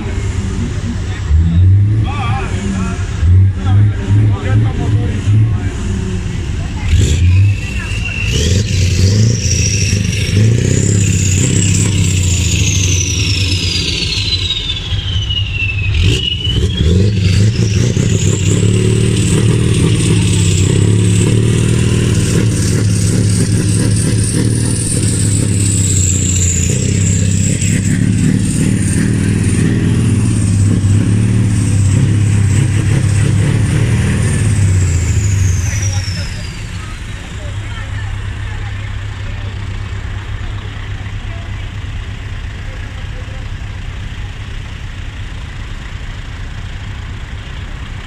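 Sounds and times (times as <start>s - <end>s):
truck engine running: 0.0s - 48.0s
high whistling tone: 7.3s - 19.4s.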